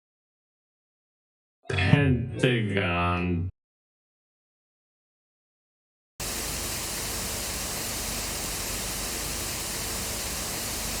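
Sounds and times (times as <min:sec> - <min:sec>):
steady static hiss: 0:06.2 - 0:11.0.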